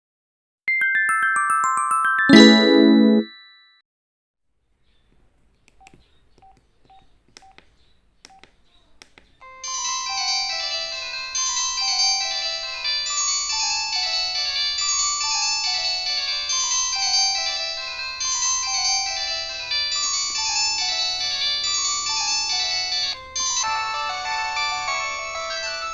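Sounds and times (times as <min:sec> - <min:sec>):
polyphonic ringtone melody: 0:00.7 - 0:03.7
short beep: 0:02.3 - 0:03.3.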